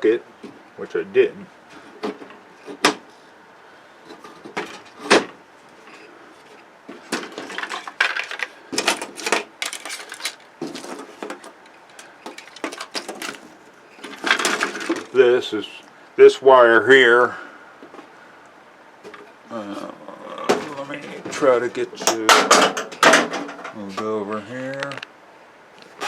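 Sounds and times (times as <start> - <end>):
hard parts clicking and clattering: 4.1 - 5.3, 5.9 - 15.2, 20.5 - 24.1.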